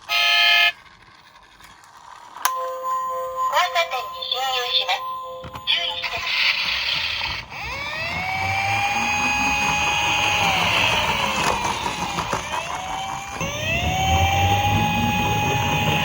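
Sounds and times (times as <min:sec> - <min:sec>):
toy siren wailing: 0:00.0 - 0:00.8, 0:02.5 - 0:16.0
toy cars rolling down plastic slope: 0:00.0 - 0:02.5, 0:06.1 - 0:16.0.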